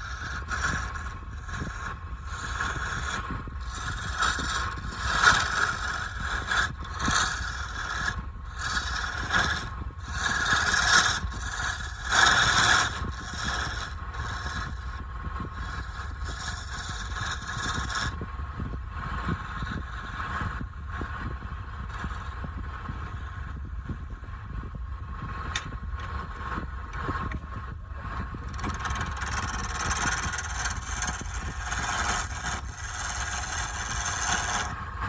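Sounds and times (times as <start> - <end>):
wood lathe running: 0.0 - 15.0, 15.6 - 18.1, 28.3 - 34.8
turning tool scraping wood: 0.0 - 24.2, 25.5 - 34.9.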